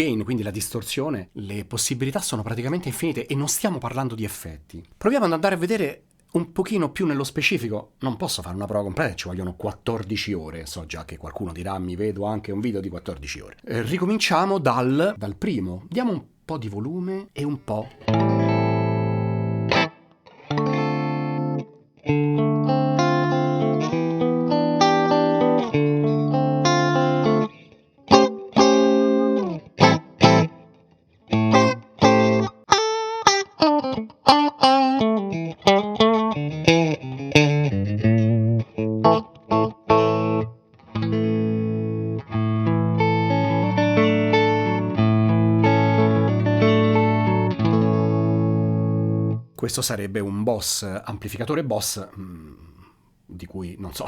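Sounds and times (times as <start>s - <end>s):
electric guitar: 18.0s - 49.5s.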